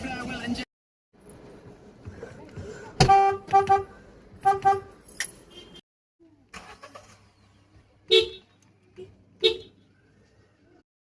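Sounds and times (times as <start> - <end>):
car horn toots: 3.0 - 5.8, 9.0 - 9.8.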